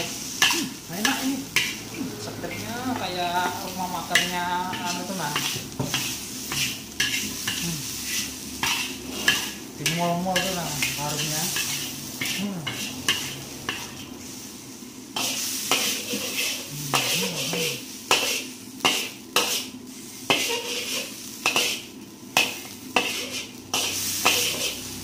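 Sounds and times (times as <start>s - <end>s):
squid and garlic sizzling in a pan: 0.0s - 25.0s
spatula knocking and scraping pan: 2.8s - 14.0s, 15.2s - 19.7s, 20.3s - 25.0s.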